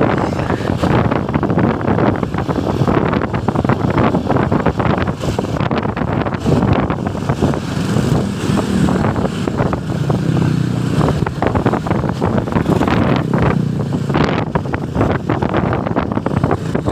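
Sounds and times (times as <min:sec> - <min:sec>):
low engine drone: 0:00.0 - 0:02.5
road traffic passing: 0:00.0 - 0:16.9
wind buffeting microphone: 0:00.0 - 0:16.9.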